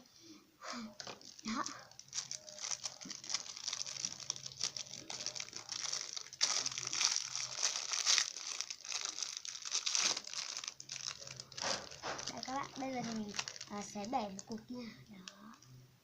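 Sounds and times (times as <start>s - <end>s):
plastic wrapper crinkling: 1.0s - 15.7s.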